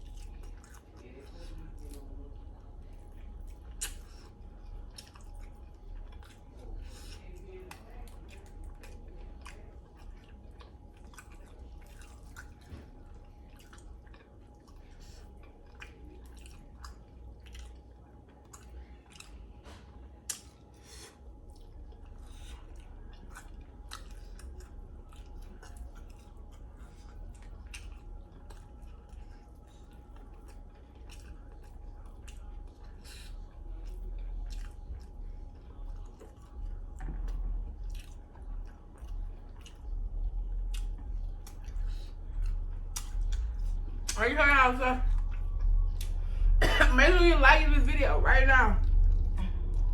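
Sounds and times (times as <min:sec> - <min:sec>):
person chewing chicken wings: 0:00.0 - 0:44.2, 0:45.1 - 0:46.4.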